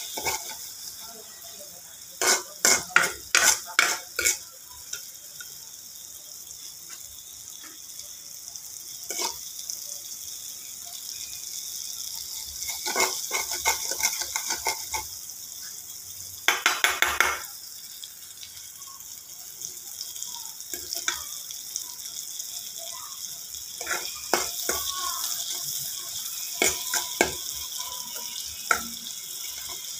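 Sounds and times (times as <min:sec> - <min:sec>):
cookware clattering: 0:00.0 - 0:00.7, 0:02.2 - 0:05.1, 0:12.6 - 0:15.1, 0:16.5 - 0:17.5, 0:23.8 - 0:25.0, 0:26.6 - 0:27.5
utensil scraping and stirring: 0:00.0 - 0:00.8, 0:02.2 - 0:05.6, 0:09.1 - 0:09.4, 0:12.6 - 0:15.2, 0:23.8 - 0:27.6
food sizzling in a pan: 0:00.0 - 0:29.9.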